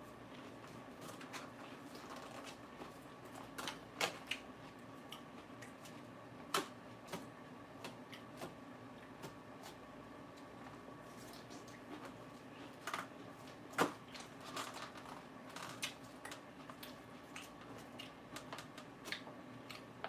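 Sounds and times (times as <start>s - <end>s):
faint steady hum: 0.0s - 20.0s
person chewing crisp lettuce: 0.2s - 6.2s, 11.0s - 19.9s.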